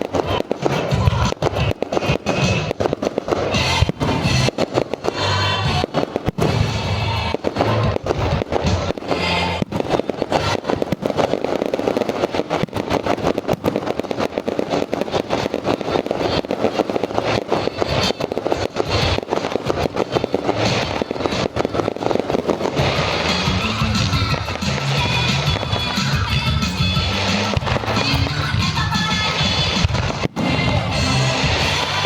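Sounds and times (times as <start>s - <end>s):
fireworks bangs and crackles: 0.0s - 32.0s
loud music over sound system: 3.5s - 9.6s, 20.4s - 32.0s.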